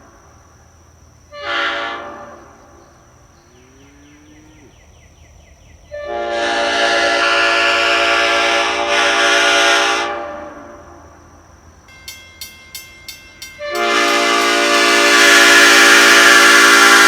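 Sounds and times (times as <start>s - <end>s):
train horn chord: 1.3s - 3.0s, 5.9s - 11.1s, 12.0s - 17.0s.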